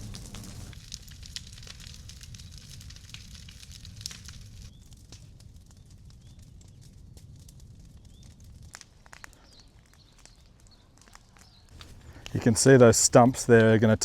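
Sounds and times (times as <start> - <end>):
bonfire crackling and popping: 0.0 - 14.0
small birds chirping: 9.0 - 12.2.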